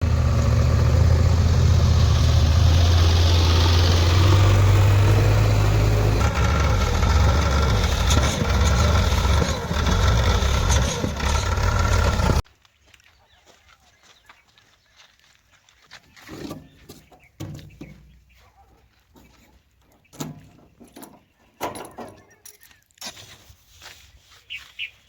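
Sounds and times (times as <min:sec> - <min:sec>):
heavy diesel engine running: 0:00.0 - 0:12.4.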